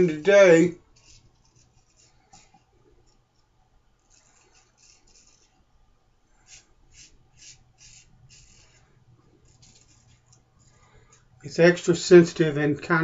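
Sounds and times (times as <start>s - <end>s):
razor scraping stubble: 0.0s - 2.5s, 4.0s - 5.6s, 6.4s - 10.4s.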